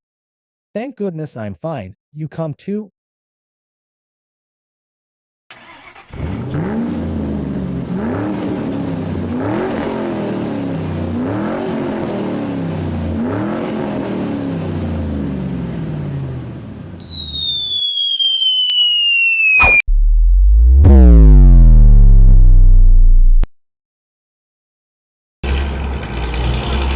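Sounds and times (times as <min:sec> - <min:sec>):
truck engine revving: 0:05.6 - 0:16.4, 0:25.5 - 0:26.9
high electronic tone gliding down: 0:17.0 - 0:23.5.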